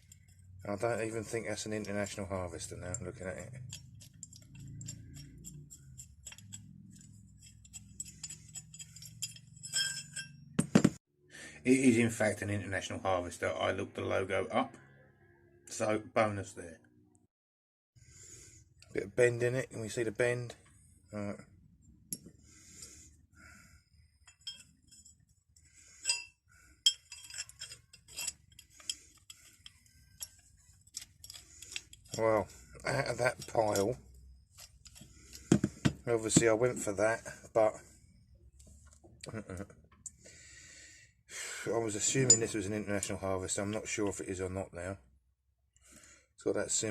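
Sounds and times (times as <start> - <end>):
steel tools clinking: 1.7 - 10.7, 24.2 - 25.3, 25.9 - 35.5, 42.0 - 43.9.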